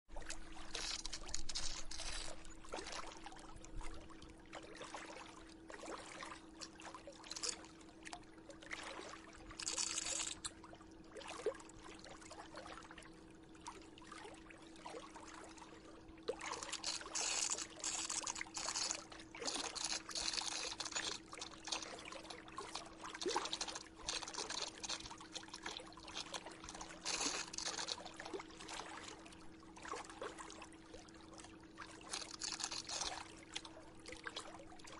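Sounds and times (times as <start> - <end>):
water pouring and trickling: 0.1 - 13.0, 13.6 - 34.9
pump humming: 16.3 - 28.7.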